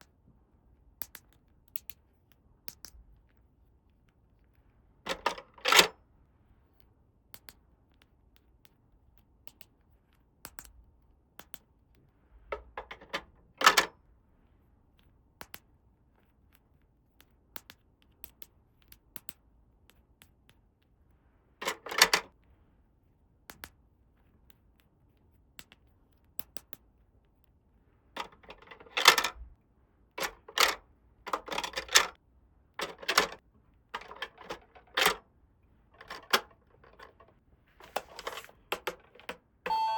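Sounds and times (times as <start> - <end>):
plastic toy pieces clicking: 21.6 - 22.3, 28.2 - 29.4, 30.2 - 32.2, 32.8 - 33.4, 34.0 - 35.2, 36.0 - 39.4
rustling scrapes: 36.9 - 38.7.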